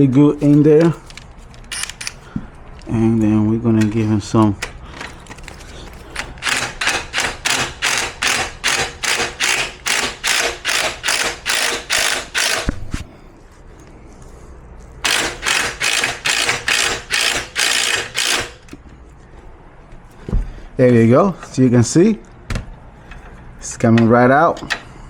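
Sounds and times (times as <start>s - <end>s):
ratchet wrench clicking: 6.4s - 12.7s, 15.0s - 18.8s.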